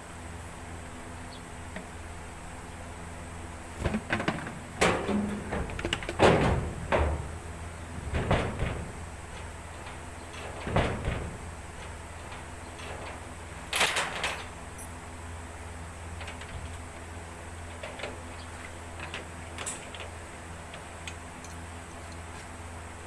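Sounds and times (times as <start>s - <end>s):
steady low hum: 0.0s - 23.0s
hard objects knocking and clattering: 3.8s - 7.4s.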